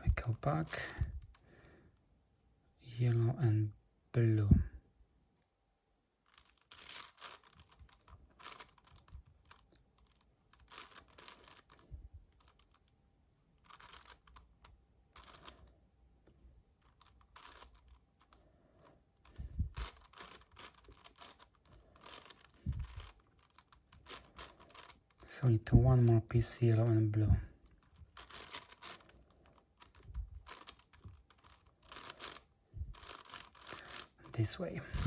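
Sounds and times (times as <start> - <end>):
puzzle cube plastic clicks: 6.3 - 15.7, 16.8 - 25.4, 27.6 - 35.0.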